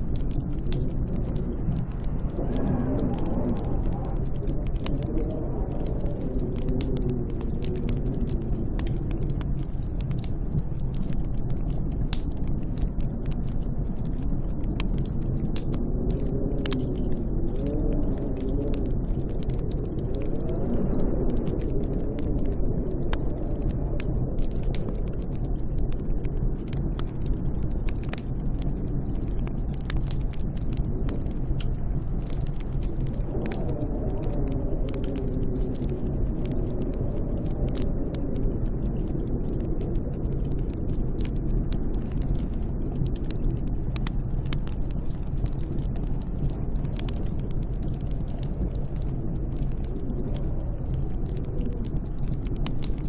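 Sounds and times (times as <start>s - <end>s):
snowstorm wind rushing: 0.0s - 10.1s, 15.4s - 25.2s, 30.9s - 42.1s, 48.2s - 52.0s
sharp crackles: 0.0s - 53.0s
wind howling: 0.0s - 53.0s.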